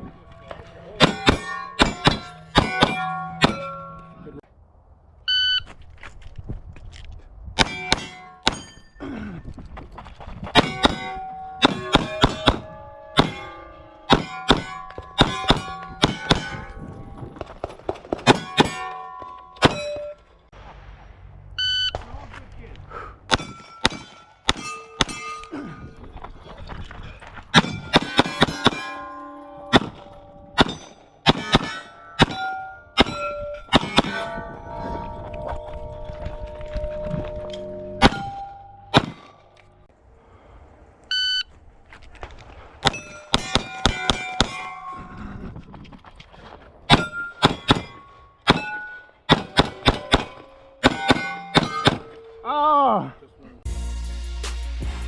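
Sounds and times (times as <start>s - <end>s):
steel target clanging: 0.9s - 4.4s, 7.6s - 9.0s, 10.6s - 20.4s, 23.3s - 25.7s, 27.5s - 39.7s, 42.8s - 45.2s, 46.9s - 52.5s.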